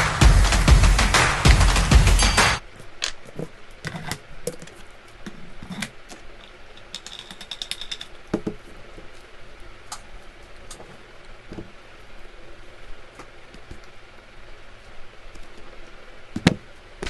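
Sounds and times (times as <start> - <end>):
metal parts rattling: 5.7 - 8.3.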